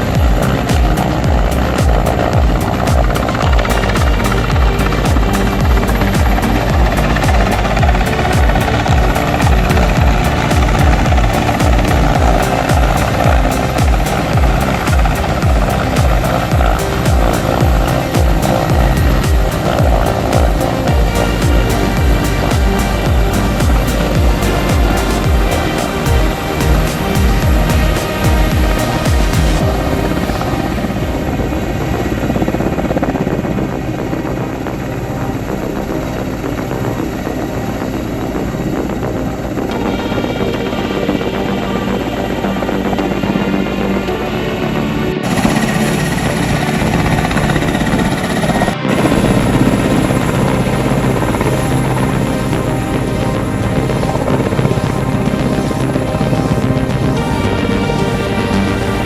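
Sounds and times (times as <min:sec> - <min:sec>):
music with regular beat: 0:00.0 - 0:31.5
helicopter rotor and turbine: 0:00.0 - 0:59.0.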